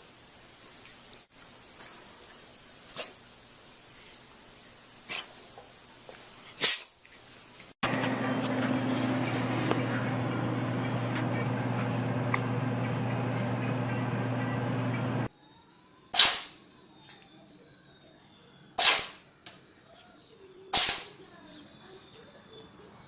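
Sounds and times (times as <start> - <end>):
cat sneezes: 5.1 - 5.4, 6.6 - 6.9, 20.7 - 21.1
background hum: 7.2 - 15.3.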